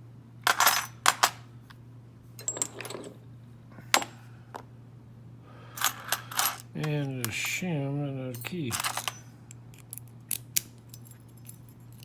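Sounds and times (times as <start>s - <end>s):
metal tools clinking: 0.5s - 1.4s, 2.4s - 3.2s, 5.8s - 7.6s, 8.3s - 10.1s, 10.8s - 12.0s.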